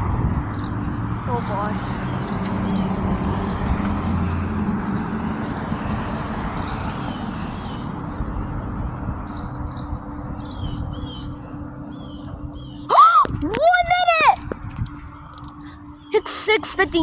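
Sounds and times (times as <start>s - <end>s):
road traffic rumble: 0.0s - 17.0s
small birds chirping: 0.5s - 8.4s, 9.2s - 12.9s, 15.2s - 17.0s.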